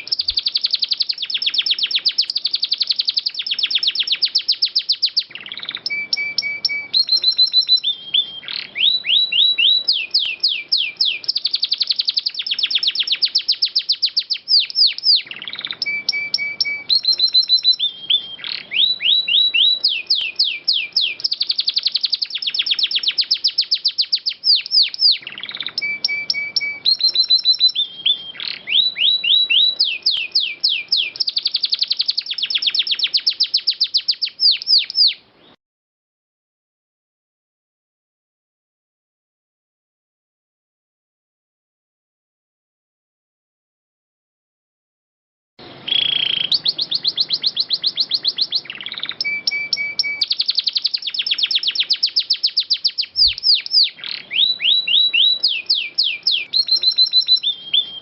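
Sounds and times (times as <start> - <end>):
canary singing with trills: 0.0 - 35.6, 45.6 - 58.0.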